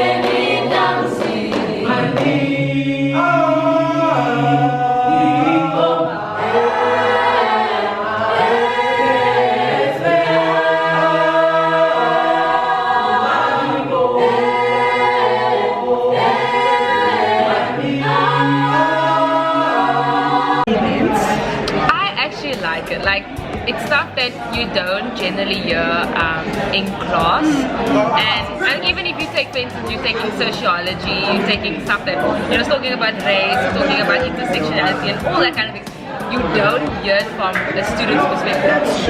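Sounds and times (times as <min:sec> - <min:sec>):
choir singing in harmony: 0:00.0 - 0:39.0.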